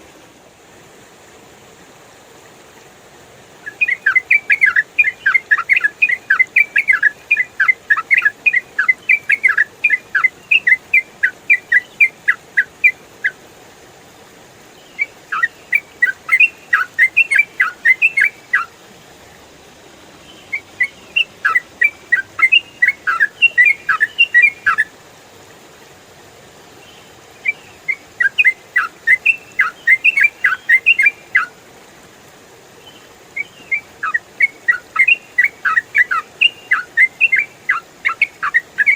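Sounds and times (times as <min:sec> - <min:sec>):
bulbul singing: 0:03.6 - 0:13.4, 0:14.8 - 0:18.7, 0:20.3 - 0:24.9, 0:26.8 - 0:31.5, 0:32.9 - 0:38.9.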